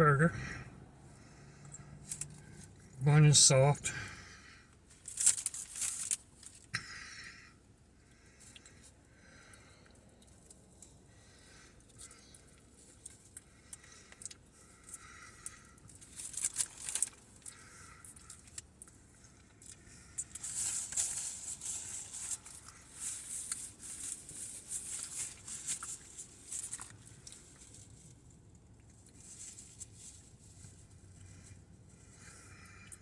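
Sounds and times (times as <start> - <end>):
person chewing burger: 4.1 - 33.0.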